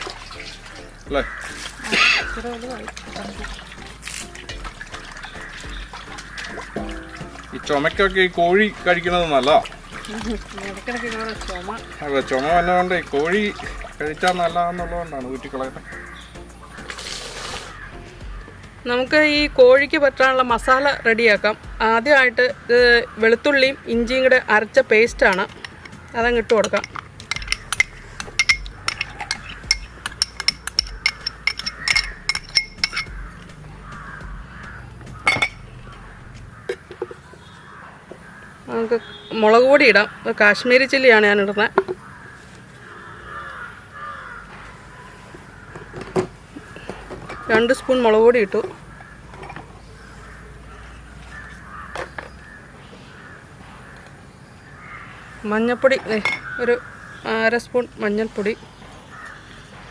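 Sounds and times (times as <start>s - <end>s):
crow cawing: 0.6s - 2.8s, 5.1s - 9.5s, 10.8s - 13.9s, 15.8s - 18.8s, 20.8s - 24.5s, 25.2s - 40.7s, 41.6s - 57.7s, 58.7s - 59.9s
spoon clinking on metal bowl: 25.2s - 33.2s, 35.2s - 35.6s.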